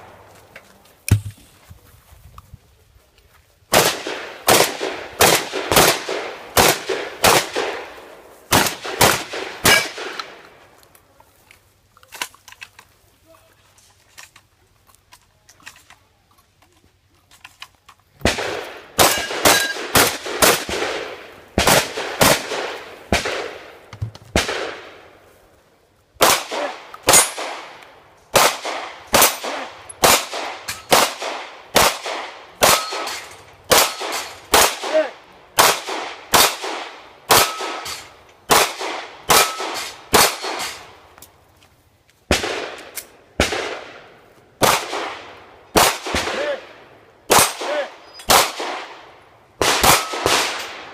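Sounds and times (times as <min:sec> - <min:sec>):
metallic ring of steel targets: 0:19.1 - 0:19.8, 0:32.7 - 0:34.4.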